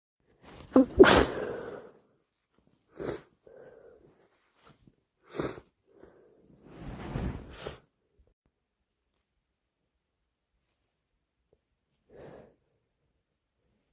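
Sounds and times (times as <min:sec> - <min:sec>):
person sneezing: 0:00.6 - 0:01.9
person blowing nose: 0:00.7 - 0:01.8, 0:02.9 - 0:03.2, 0:05.2 - 0:05.7
person sniffing: 0:00.7 - 0:01.9, 0:02.9 - 0:03.9, 0:05.2 - 0:05.7.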